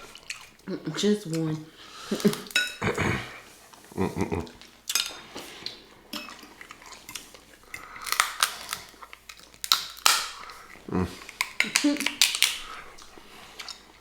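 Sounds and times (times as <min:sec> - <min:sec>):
chewing: 0:00.0 - 0:14.0
utensils clinking against dishes: 0:02.1 - 0:03.0, 0:04.9 - 0:05.5, 0:06.1 - 0:07.9.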